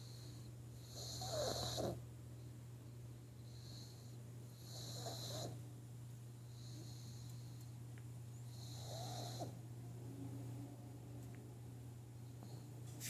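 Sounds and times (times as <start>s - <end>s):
dog snoring loudly: 0.8s - 2.0s, 3.5s - 5.6s, 8.5s - 9.6s.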